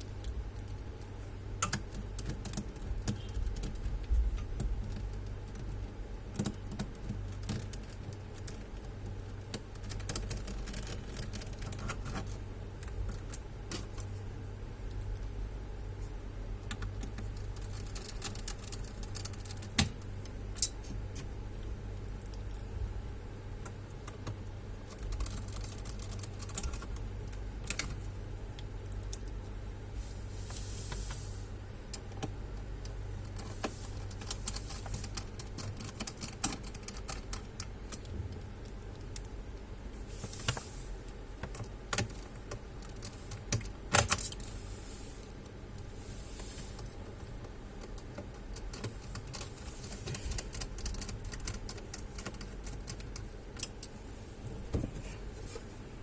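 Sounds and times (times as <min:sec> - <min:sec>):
steady low hum: 0:00.0 - 0:56.0
clicks and taps on computer parts: 0:01.6 - 0:05.7, 0:06.3 - 0:14.1.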